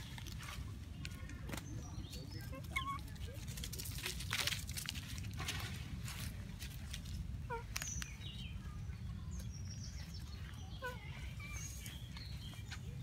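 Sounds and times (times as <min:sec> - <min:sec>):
steady low rumble: 0:00.0 - 0:13.0
monkeys squeaky calls: 0:02.4 - 0:03.2, 0:07.4 - 0:07.8.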